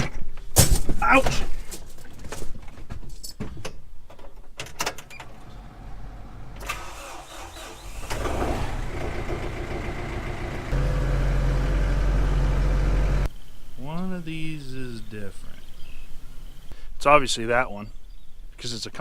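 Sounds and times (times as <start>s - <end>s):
engine starting and running: 5.1s - 13.3s.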